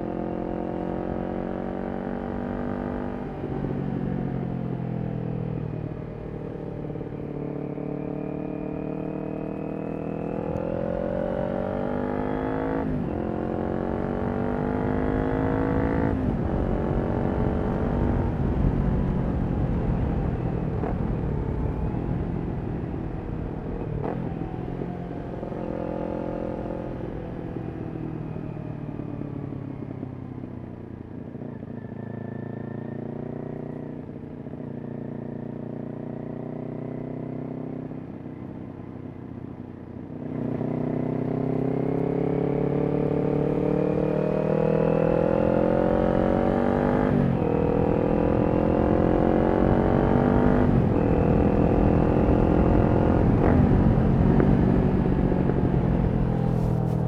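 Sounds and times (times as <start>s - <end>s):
motorcycle engine revving: 8.0s - 21.2s, 40.1s - 57.0s.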